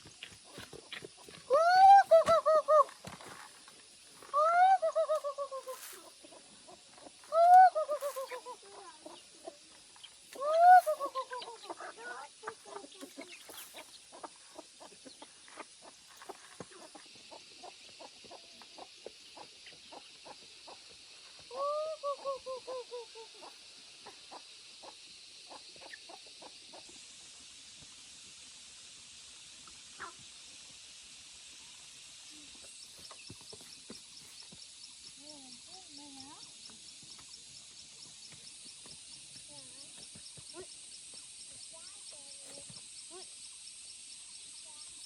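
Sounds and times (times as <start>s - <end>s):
steady high hiss: 0.0s - 45.0s
chickens clucking: 4.2s - 27.0s
bird giving falling calls: 7.2s - 9.2s.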